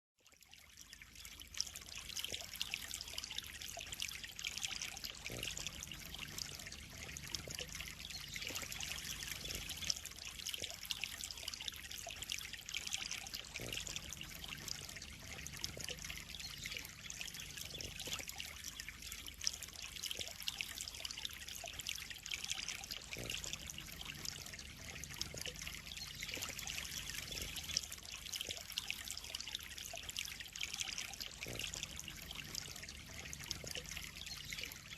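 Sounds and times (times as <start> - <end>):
water trickling into pond: 0.2 - 34.9.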